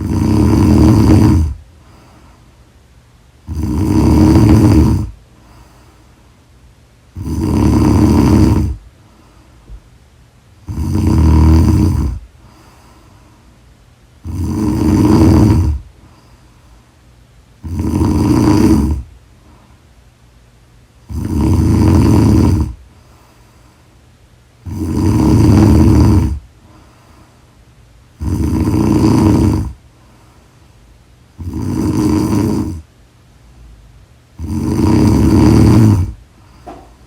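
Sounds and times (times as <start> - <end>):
woman snoring loudly: 0.0 - 1.6, 3.5 - 5.2, 7.2 - 8.8, 10.6 - 12.2, 14.2 - 15.9, 17.6 - 19.1, 21.1 - 22.8, 24.6 - 26.4, 28.2 - 29.8, 31.4 - 32.9, 34.4 - 36.2
quiet breathing: 0.0 - 10.0, 10.6 - 20.2, 21.0 - 32.9, 33.6 - 37.0.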